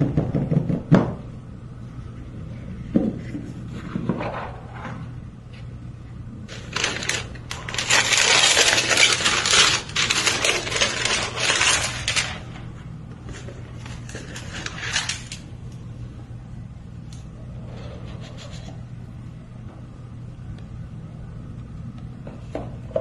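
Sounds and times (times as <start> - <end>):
packaging crinkling: 6.5 - 12.5, 13.8 - 15.5.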